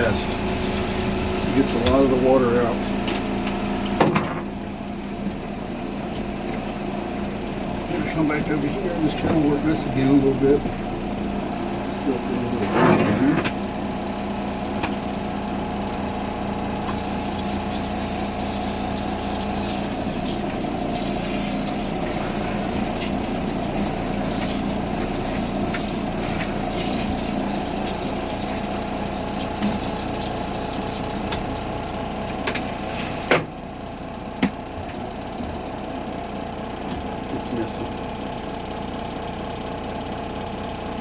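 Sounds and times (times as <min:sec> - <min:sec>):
water running into washing machine: 0:00.0 - 0:04.0, 0:16.8 - 0:31.6
spin-dryer motor hum: 0:00.0 - 0:41.0.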